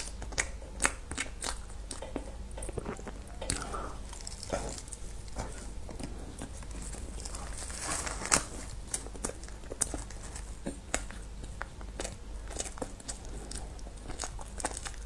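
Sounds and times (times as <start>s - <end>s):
chewing: 0.0s - 15.0s
sharp mouth clicks: 0.4s - 5.6s
light crinkling: 0.4s - 11.7s.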